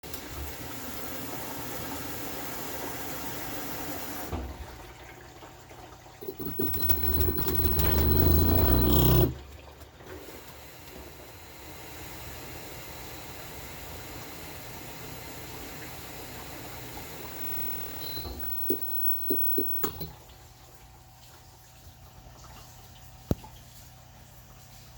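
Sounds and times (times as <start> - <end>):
washer motor whining and grinding: 6.2 - 9.6, 10.4 - 20.3.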